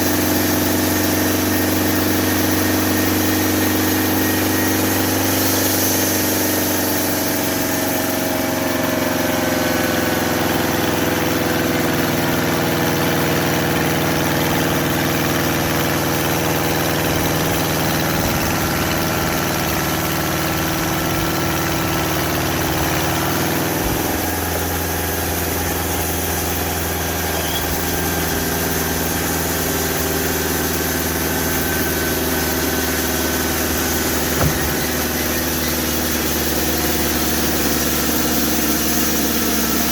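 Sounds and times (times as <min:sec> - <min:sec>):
sawmill engine drone: 0:00.0 - 0:39.9
small knock: 0:34.3 - 0:35.0.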